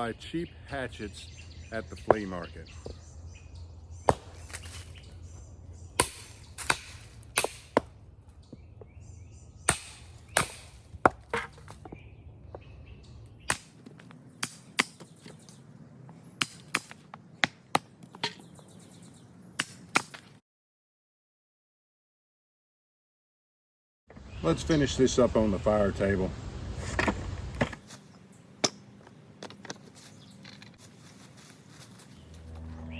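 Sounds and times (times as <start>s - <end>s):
hatchet chopping wood: 4.0s - 5.1s, 6.0s - 8.0s, 9.6s - 12.0s, 13.4s - 15.5s, 16.3s - 18.4s, 19.6s - 20.4s.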